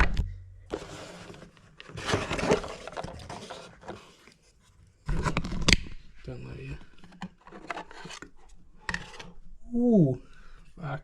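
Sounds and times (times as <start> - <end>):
packaging rustling and scraping: 0.7 - 5.8, 6.7 - 9.4.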